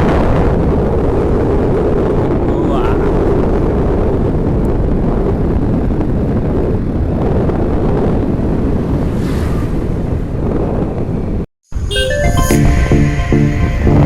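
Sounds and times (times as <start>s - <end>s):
road and wind noise: 0.0s - 13.8s
vehicle rumbling on the move: 3.2s - 11.9s.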